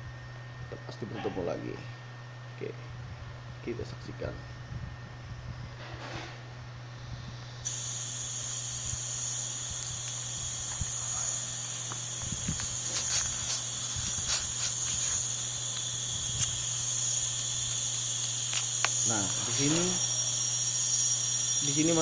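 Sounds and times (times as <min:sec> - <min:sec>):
steady low hum: 0:00.0 - 0:22.0
insects droning high-pitched: 0:05.4 - 0:22.0.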